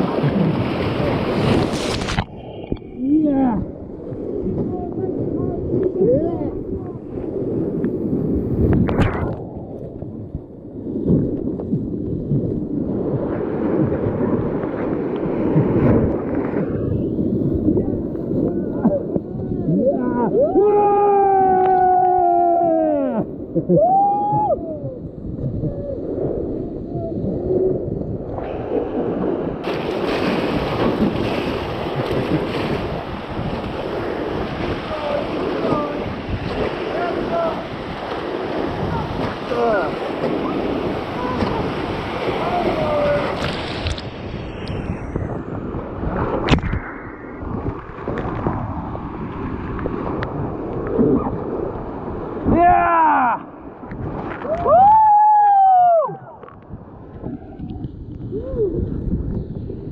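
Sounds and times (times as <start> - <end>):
wind buffeting microphone: 0.0 - 59.9
person shouting: 19.4 - 24.8, 52.5 - 53.4
river water rushing: 29.6 - 43.7.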